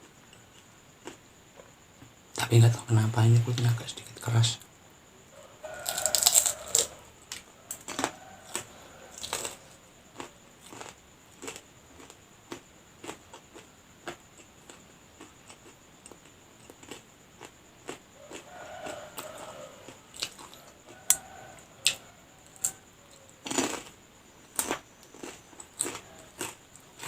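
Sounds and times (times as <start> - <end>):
crunchy chewing: 0.0 - 2.7, 5.3 - 27.0
crunchy bite: 5.6 - 27.0.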